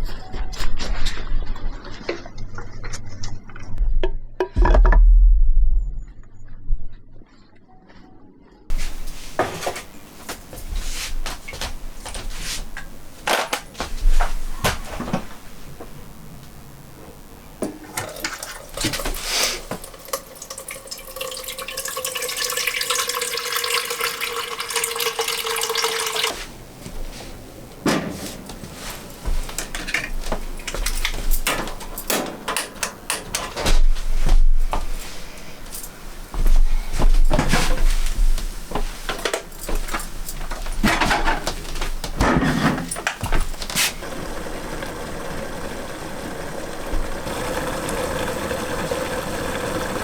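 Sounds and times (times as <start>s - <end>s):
tap water running: 8.7s - 15.3s, 17.6s - 26.7s, 28.8s - 35.4s, 37.1s - 50.0s.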